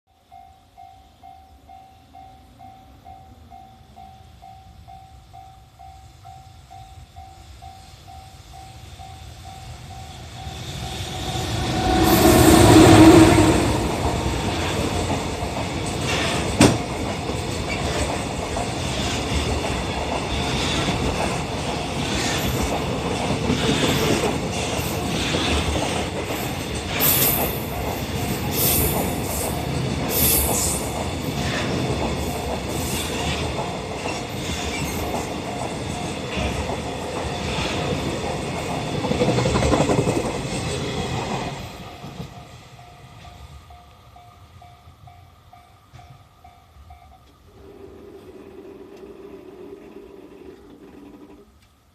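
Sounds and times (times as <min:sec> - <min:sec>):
electric locomotive passing: 0:00.2 - 0:51.9
freight wagons clacking over rails: 0:13.7 - 0:42.4.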